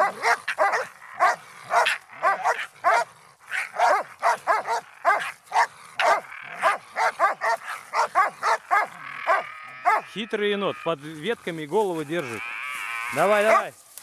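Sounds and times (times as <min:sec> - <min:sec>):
dog barking in short yelps: 0:00.0 - 0:10.0.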